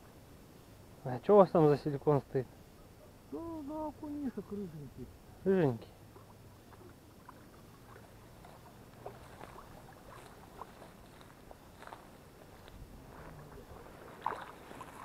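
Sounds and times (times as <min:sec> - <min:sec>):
shallow river water splashing: 0:04.0 - 0:15.0.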